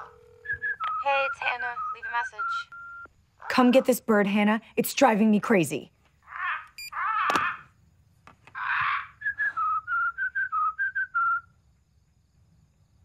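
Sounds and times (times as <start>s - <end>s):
bird whistling a tune: 0.4s - 3.1s, 9.2s - 11.6s.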